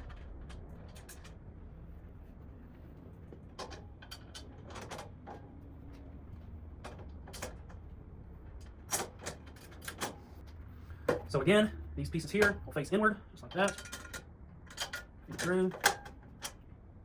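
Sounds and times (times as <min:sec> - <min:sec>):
low steady hum: 0:00.0 - 0:17.0
metal parts knocking and scraping: 0:03.5 - 0:05.5, 0:13.4 - 0:16.6.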